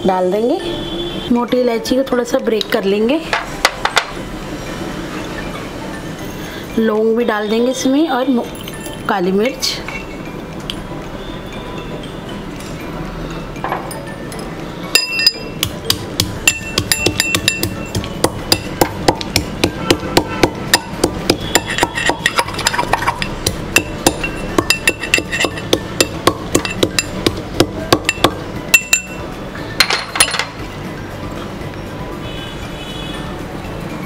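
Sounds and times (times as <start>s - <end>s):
pestle pounding in metal mortar: 15.0s - 29.2s.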